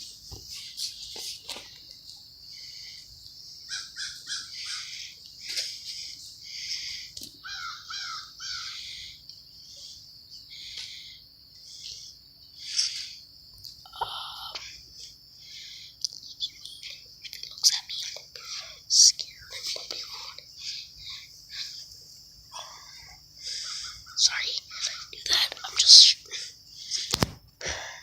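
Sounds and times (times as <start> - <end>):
high drone of insects: 0.0 - 28.0
birds calling: 2.4 - 13.2, 19.3 - 27.1.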